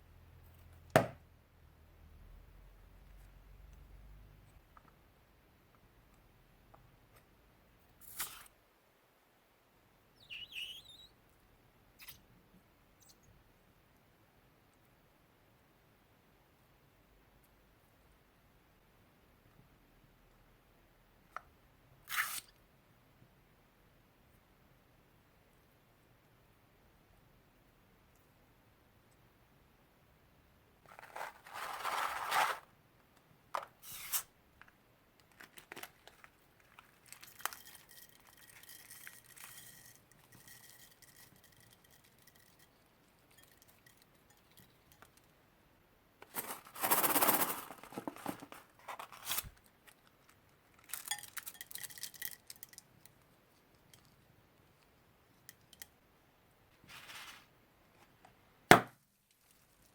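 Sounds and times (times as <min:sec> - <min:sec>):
plastic tearing and crinkling: 0:30.9 - 0:32.7, 0:35.2 - 0:39.5, 0:46.2 - 0:50.0
small clicks and clinks: 0:50.8 - 0:54.2.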